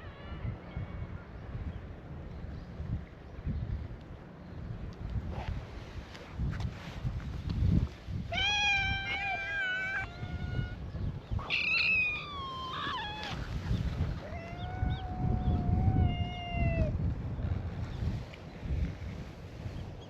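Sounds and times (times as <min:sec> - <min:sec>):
cats meowing: 0:08.3 - 0:10.8, 0:11.4 - 0:13.5, 0:14.2 - 0:16.9.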